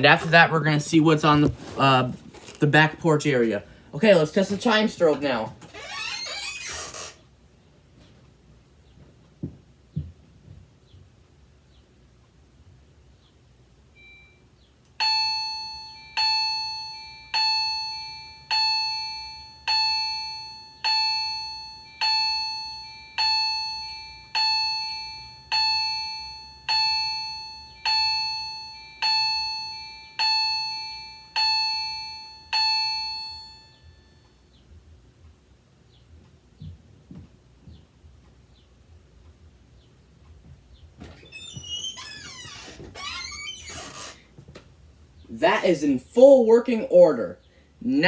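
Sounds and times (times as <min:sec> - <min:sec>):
fire alarm electronic chime: 0:13.9 - 0:34.4.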